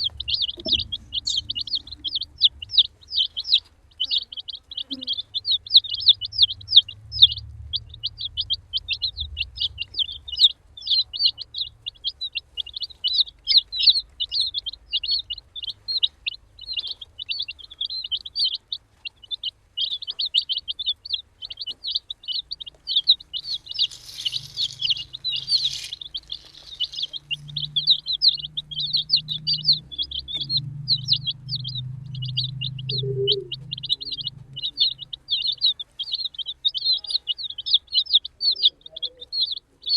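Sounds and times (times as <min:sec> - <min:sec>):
baby chicks peeping: 0:00.0 - 0:39.9
scratchy rustle: 0:23.5 - 0:27.6.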